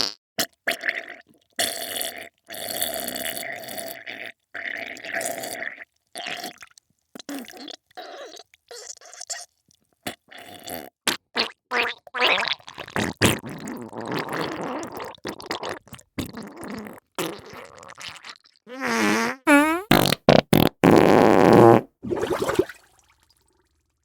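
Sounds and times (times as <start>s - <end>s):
fart sounds: 10.6s - 22.7s.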